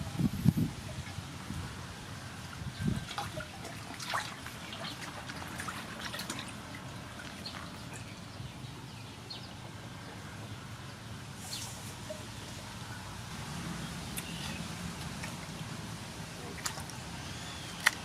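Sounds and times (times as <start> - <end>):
water dripping and trickling: 0.0 - 8.9, 11.7 - 12.8, 13.8 - 18.0.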